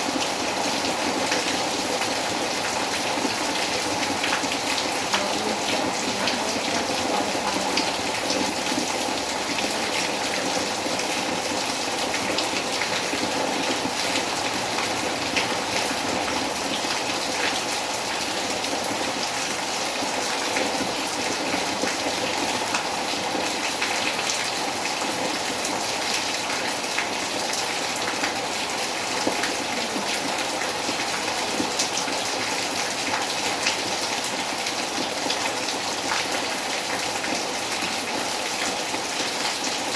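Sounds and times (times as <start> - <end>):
raindrops ticking on surfaces: 0.0 - 39.9.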